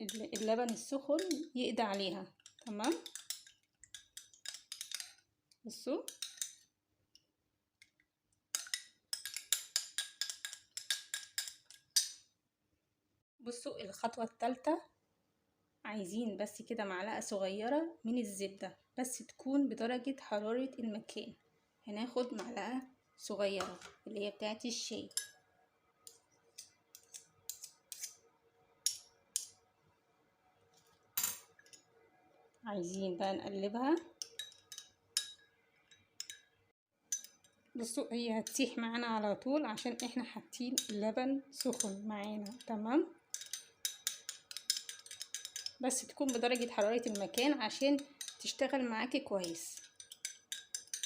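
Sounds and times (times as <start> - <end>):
spoon clinking: 0.0 - 5.2, 6.1 - 6.6, 8.5 - 12.3, 25.1 - 25.4, 28.9 - 29.6, 34.2 - 36.5, 37.1 - 37.5, 40.7 - 41.0, 43.3 - 48.6, 49.4 - 51.0
teaspoon scraping a dish: 0.0 - 5.3, 26.1 - 28.2, 43.3 - 48.6, 49.4 - 51.0
utensil clicking against bowl: 43.3 - 48.5, 49.4 - 51.0.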